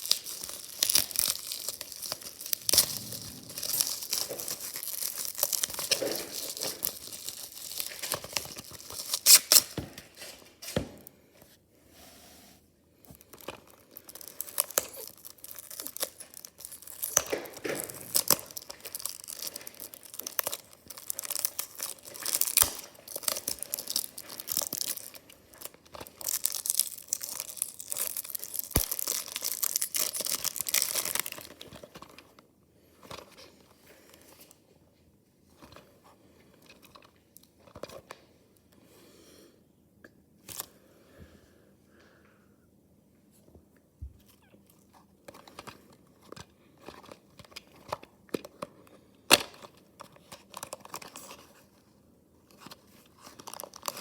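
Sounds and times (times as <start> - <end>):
packaging tearing and crinkling: 0.0 - 10.4, 13.4 - 32.2, 49.3 - 51.7, 52.5 - 54.0.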